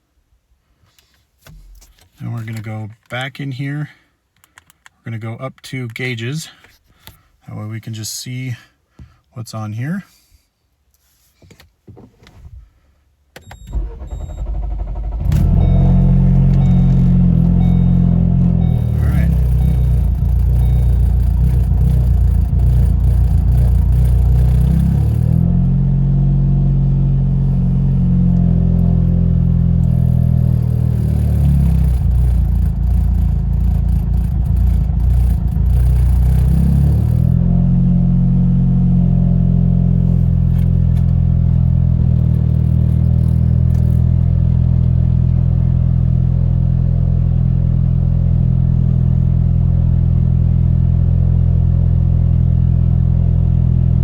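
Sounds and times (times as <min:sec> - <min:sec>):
car engine idling: 0:13.7 - 0:54.0.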